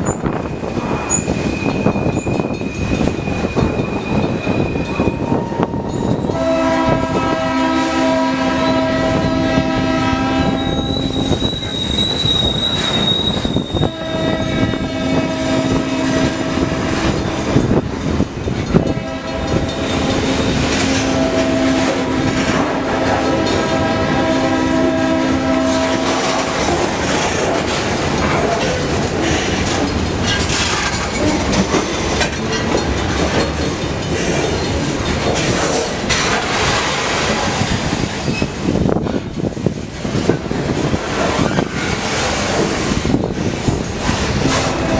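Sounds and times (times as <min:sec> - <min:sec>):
train rumbling past: 0:00.0 - 0:44.9
wheels clacking on rails: 0:00.0 - 0:44.9
train air horn blasts: 0:05.1 - 0:11.6, 0:12.7 - 0:17.7, 0:18.8 - 0:27.2, 0:44.4 - 0:44.9.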